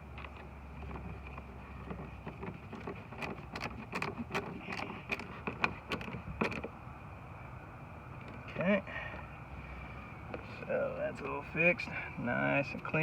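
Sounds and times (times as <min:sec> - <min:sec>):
clicks and taps on plastic door handle: 0:01.8 - 0:06.7.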